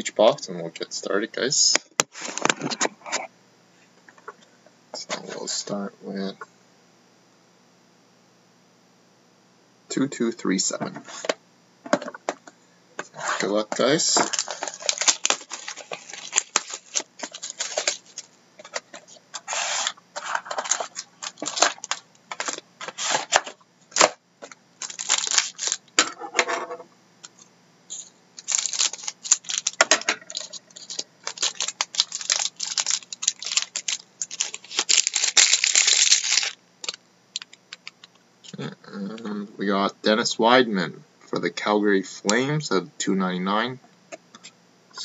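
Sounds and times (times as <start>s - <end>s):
card packaging tearing and crinkling: 13.4s - 25.9s, 27.9s - 38.0s.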